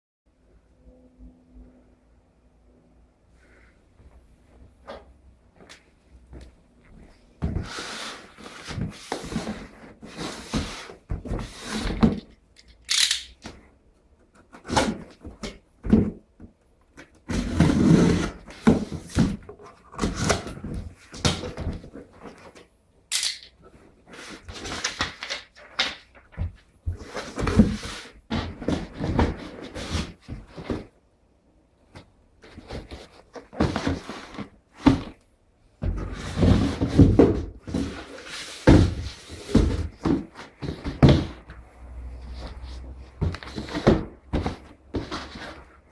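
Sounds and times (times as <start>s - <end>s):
boxes knocking and thudding: 7.4s - 12.4s, 14.6s - 22.4s, 26.3s - 31.0s, 32.0s - 35.2s, 35.8s - 41.6s, 42.4s - 45.9s
packaging rustling and scraping: 7.5s - 12.3s, 23.6s - 30.9s, 32.4s - 35.2s, 42.2s - 45.9s.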